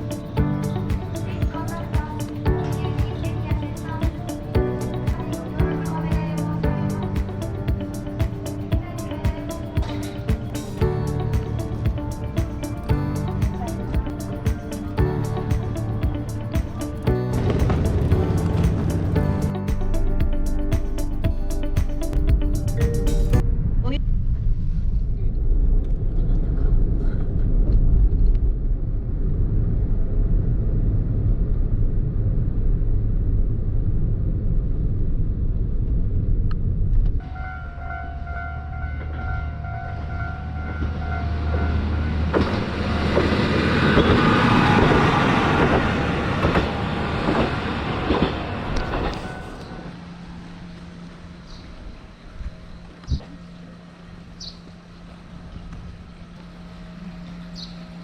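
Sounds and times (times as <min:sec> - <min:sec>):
steady whine: 0:00.0 - 0:25.6, 0:37.2 - 0:58.0
train rumbling: 0:00.0 - 0:31.3, 0:37.2 - 0:58.0
rush of noise: 0:00.0 - 0:37.3, 0:40.9 - 0:57.3.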